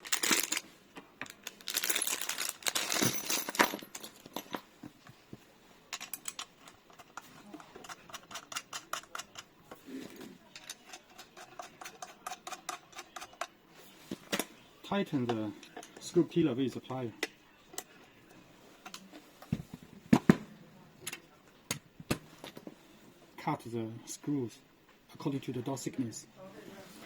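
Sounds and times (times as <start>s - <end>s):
lock parts clicking: 5.9s - 7.2s.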